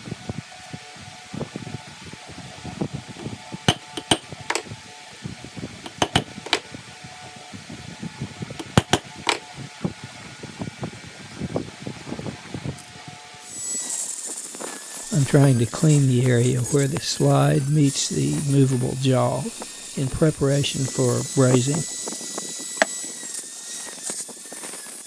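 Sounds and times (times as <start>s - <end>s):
hammer knocking on metal: 8.6s - 9.1s
fan hum: 13.5s - 24.8s.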